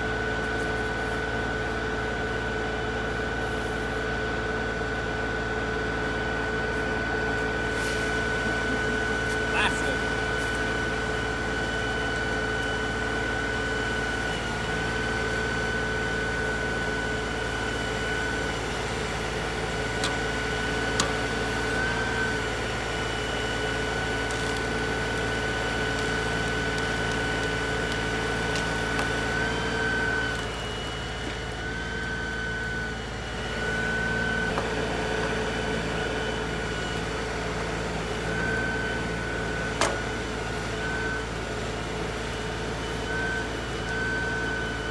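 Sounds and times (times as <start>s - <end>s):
tractor diesel engine running: 0.0s - 44.9s.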